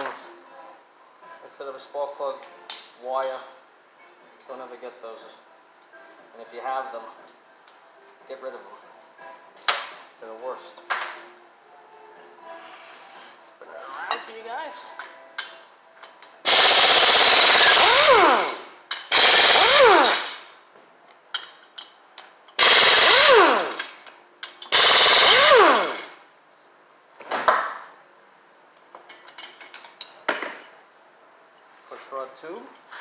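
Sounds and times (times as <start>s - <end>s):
impact wrench whirring: 16.5s - 20.6s, 22.6s - 24.0s, 24.7s - 26.2s.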